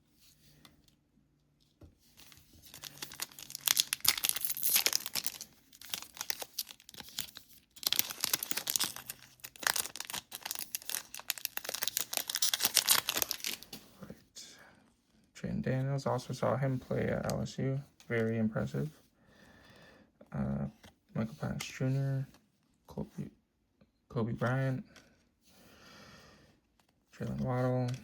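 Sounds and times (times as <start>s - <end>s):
card pack wrapper tearing and crinkling: 2.2s - 13.8s.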